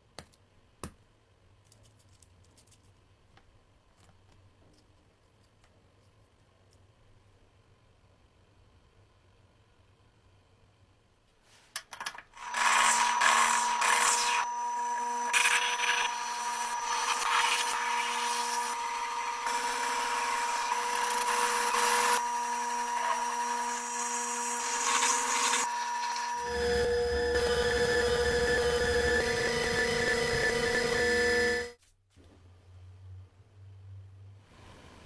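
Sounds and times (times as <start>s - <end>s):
power tool motor whining: 12.4s - 31.8s.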